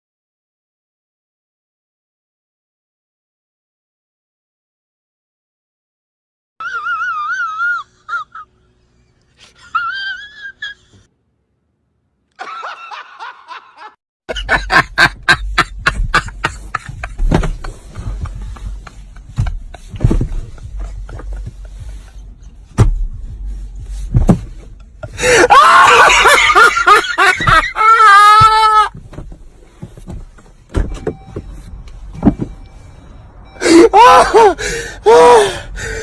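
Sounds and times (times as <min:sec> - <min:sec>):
person laughing hard: 0:06.6 - 0:08.5, 0:09.4 - 0:11.0, 0:12.4 - 0:22.1, 0:25.0 - 0:28.9, 0:33.6 - 0:35.6.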